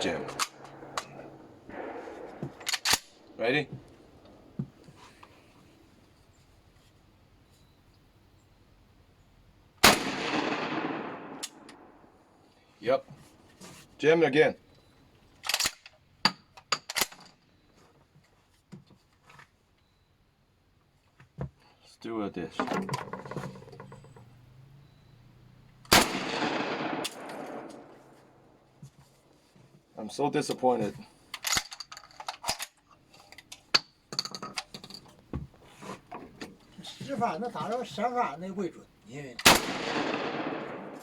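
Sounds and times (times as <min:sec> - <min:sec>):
shotgun action clicking: 0:00.2 - 0:01.2, 0:01.8 - 0:03.2, 0:25.9 - 0:27.9.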